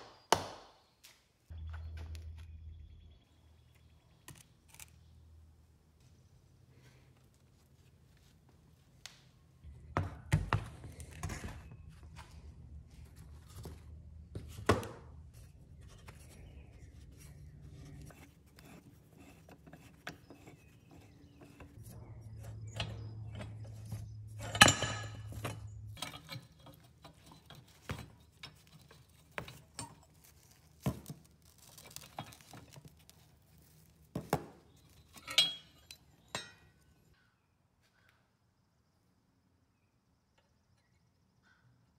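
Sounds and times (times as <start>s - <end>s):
low hum: 1.5s - 6.4s, 21.7s - 27.0s.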